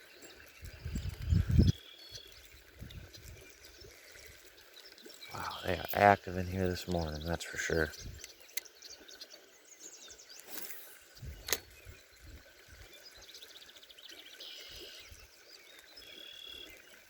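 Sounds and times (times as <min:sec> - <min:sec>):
low outdoor ambience: 0:00.0 - 0:16.7
songbirds singing: 0:00.0 - 0:17.0.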